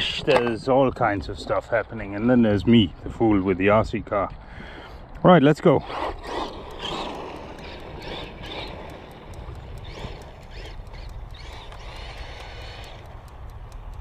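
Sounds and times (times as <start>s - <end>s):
rc car motor and tyres: 5.8s - 14.0s.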